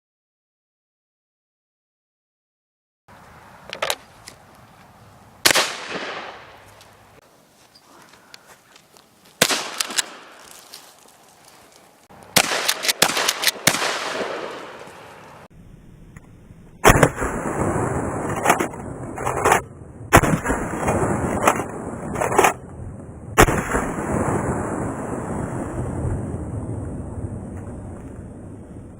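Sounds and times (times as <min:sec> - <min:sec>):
shotgun shots: 0:05.4 - 0:06.6, 0:09.4 - 0:10.4, 0:12.3 - 0:15.1, 0:16.8 - 0:18.7, 0:19.4 - 0:21.8, 0:23.4 - 0:24.7.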